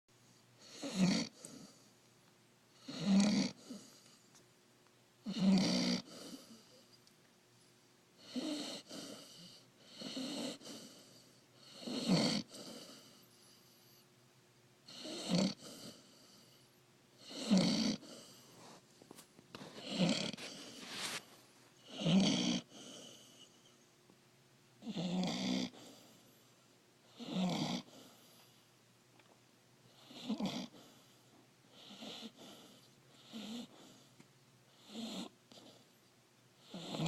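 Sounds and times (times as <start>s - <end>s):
puppy snoring: 0.6s - 2.0s, 2.7s - 4.3s, 5.2s - 6.9s, 8.2s - 14.0s, 14.8s - 18.8s, 19.6s - 23.8s, 24.8s - 28.6s, 29.8s - 36.0s, 36.6s - 37.0s.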